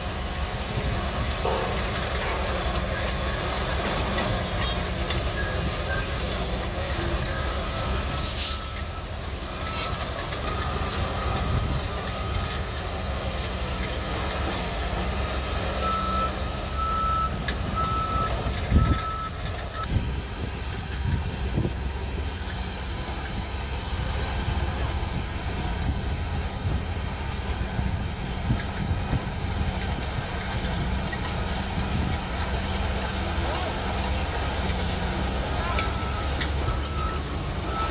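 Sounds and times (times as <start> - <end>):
bulldozer diesel engine running: 0.0 - 37.9
brief hiss: 8.2 - 9.0
reversing alarm beeping: 15.7 - 19.9, 35.6 - 37.9.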